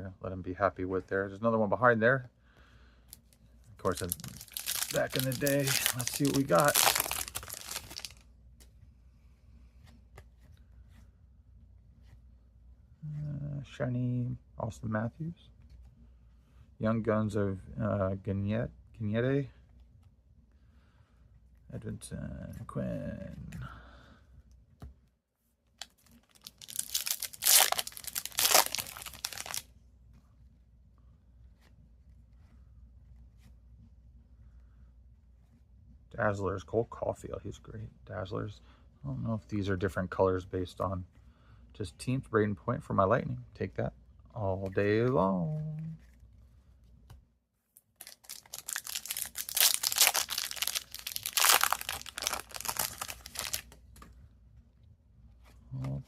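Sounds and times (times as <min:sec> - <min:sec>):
plastic wrapper tearing and crinkling: 0:03.8 - 0:08.2, 0:25.8 - 0:29.6, 0:47.8 - 0:53.7.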